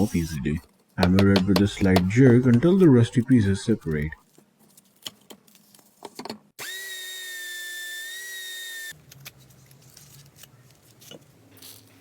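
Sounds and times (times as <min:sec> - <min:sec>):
electric drill whining: 0:06.6 - 0:08.9.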